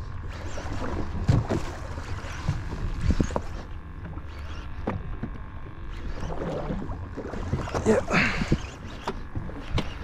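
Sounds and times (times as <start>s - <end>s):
water splashes: 0.3s - 3.6s
water slapping against boat hull: 0.5s - 5.5s.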